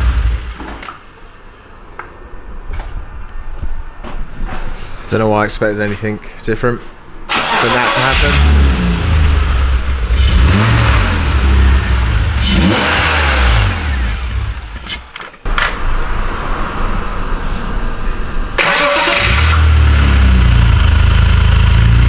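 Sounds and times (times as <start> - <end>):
car engine revving: 0.0 - 0.9, 7.3 - 22.0.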